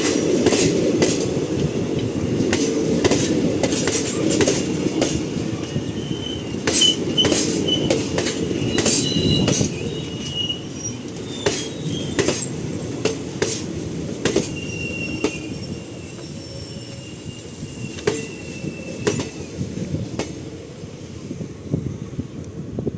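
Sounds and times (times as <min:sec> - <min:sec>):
wheels clanking over rail joints: 0:00.0 - 0:16.3
train coaches rumbling on track: 0:00.0 - 0:22.9
metallic wheel squeal: 0:05.8 - 0:12.5, 0:14.4 - 0:19.4.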